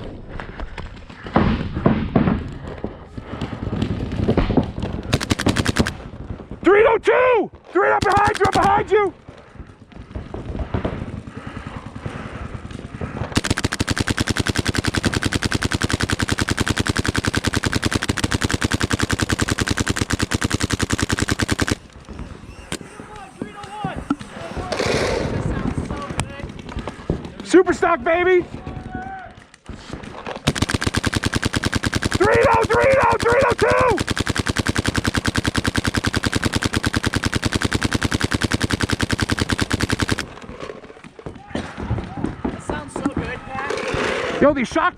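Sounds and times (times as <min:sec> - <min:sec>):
quiet scattered paintball shots: 0:00.0 - 0:44.5
paintball marker rapid firing: 0:03.1 - 0:06.2, 0:07.8 - 0:22.9, 0:23.5 - 0:27.9, 0:29.7 - 0:41.2.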